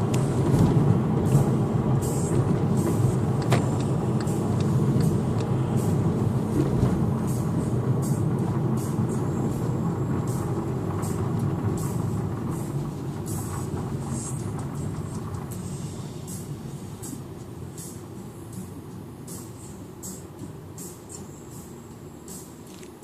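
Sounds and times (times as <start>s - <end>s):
vehicle rumble: 0.0s - 23.0s.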